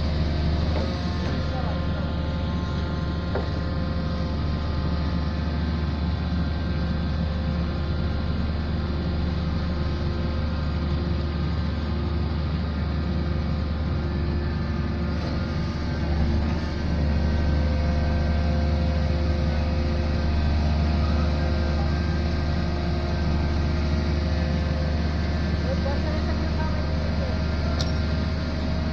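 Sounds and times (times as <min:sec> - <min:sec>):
machine engine droning: 0:00.0 - 0:28.9.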